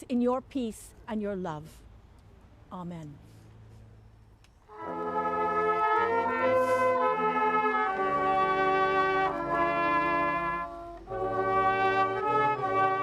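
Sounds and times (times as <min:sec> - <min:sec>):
brass band playing a carol: 0:04.7 - 0:13.0.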